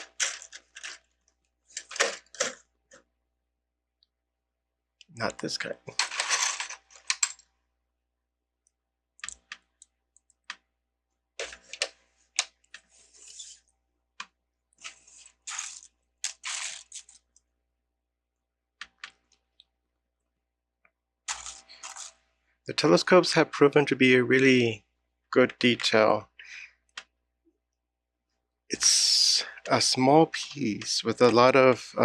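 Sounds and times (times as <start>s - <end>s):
plastic bricks clicking and rattling: 0.0s - 1.1s, 5.9s - 7.4s.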